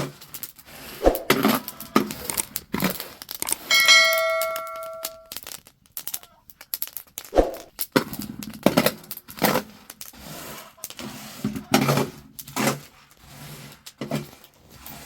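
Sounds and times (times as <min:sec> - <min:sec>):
rustling and crinkling: 0:00.0 - 0:15.0
metal object ringing like a bell: 0:03.7 - 0:05.3.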